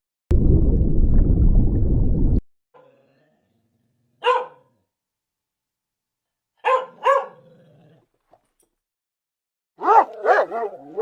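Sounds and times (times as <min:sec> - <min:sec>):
dog barking high-pitched: 0:04.2 - 0:04.7, 0:06.6 - 0:07.4, 0:09.8 - 0:11.0.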